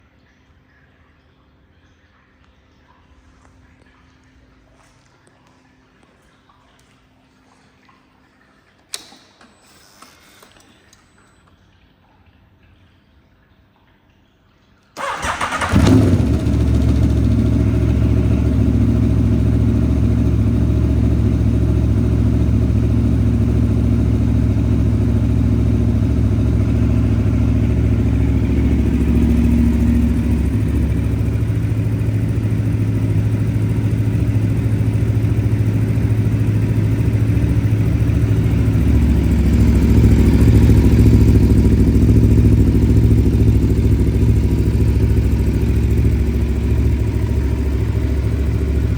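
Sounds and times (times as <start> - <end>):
motorcycle engine starting and idling: 15.0 - 48.9.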